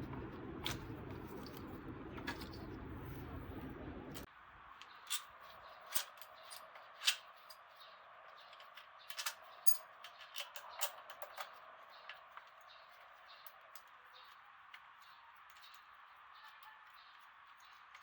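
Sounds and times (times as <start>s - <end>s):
hand tools clicking and tapping: 8.4s - 18.0s.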